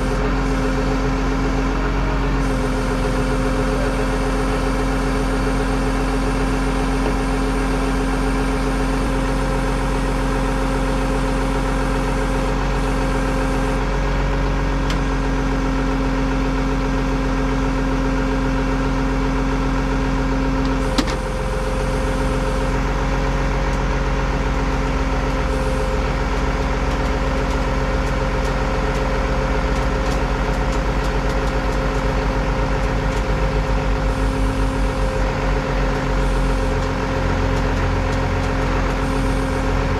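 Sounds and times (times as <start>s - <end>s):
low pulsing: 0.0s - 14.0s
truck engine idling: 0.0s - 39.9s.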